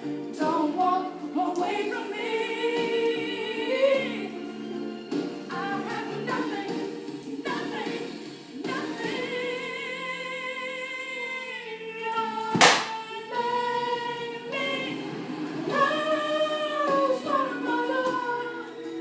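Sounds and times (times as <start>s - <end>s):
woman singing with vibrato: 8.7s - 15.0s, 15.7s - 18.8s.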